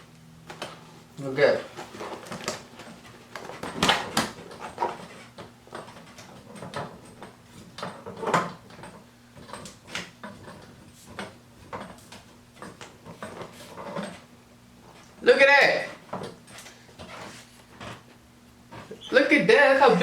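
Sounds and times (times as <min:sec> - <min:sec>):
clicks and rustles of handling packaging: 0:01.6 - 0:14.2.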